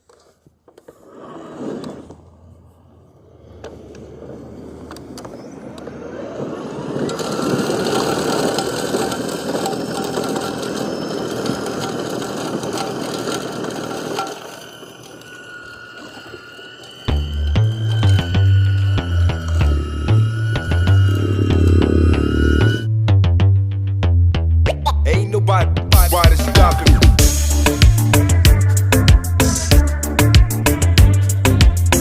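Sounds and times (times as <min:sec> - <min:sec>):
snowblower churning snow: 0:06.9 - 0:22.8
loud low hum: 0:17.2 - 0:23.8.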